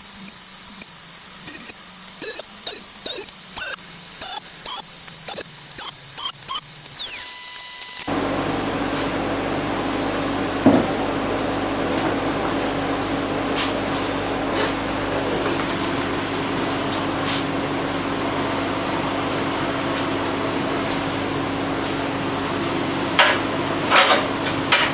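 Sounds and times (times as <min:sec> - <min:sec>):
power tool motor whine: 0:00.0 - 0:08.1
machine running with low hum: 0:00.0 - 0:09.8.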